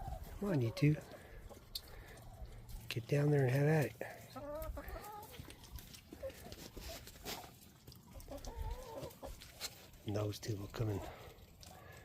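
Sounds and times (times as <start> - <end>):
chickens clucking: 0.0 - 12.0.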